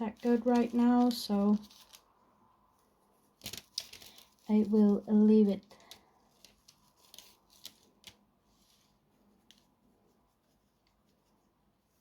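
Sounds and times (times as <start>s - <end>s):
small objects clicking and tapping: 3.4s - 4.5s, 5.6s - 8.2s.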